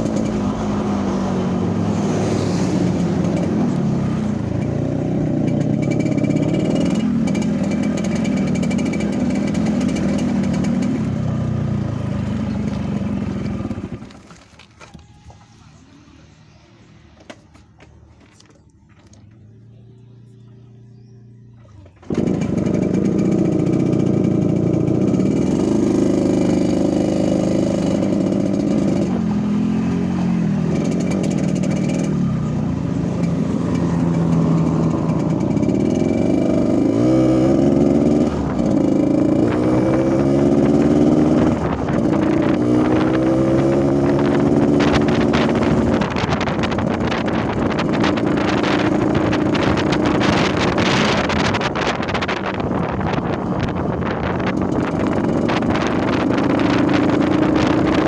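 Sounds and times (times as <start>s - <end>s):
two-stroke motorcycle engine revving: 0.0s - 14.1s, 19.6s - 58.0s.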